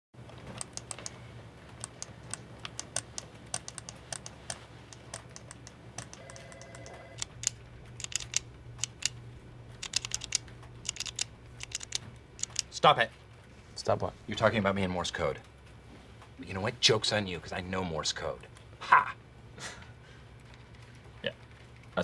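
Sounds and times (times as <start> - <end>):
morse code tapping: 1.8 - 9.1.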